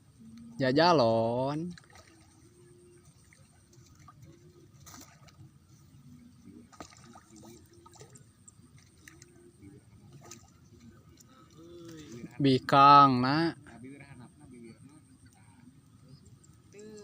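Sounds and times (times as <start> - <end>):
water dripping and trickling: 1.3 - 5.7.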